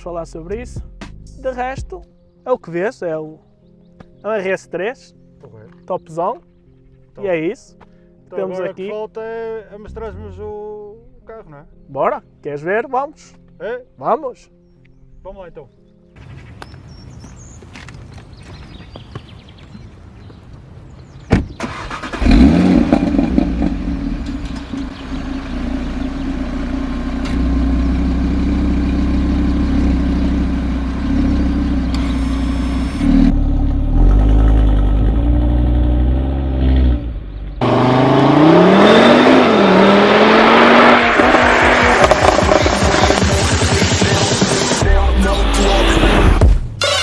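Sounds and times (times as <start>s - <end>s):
car engine starting and idling: 21.5s - 47.0s
car accelerating hard: 21.7s - 44.8s
engine revving: 21.7s - 47.0s.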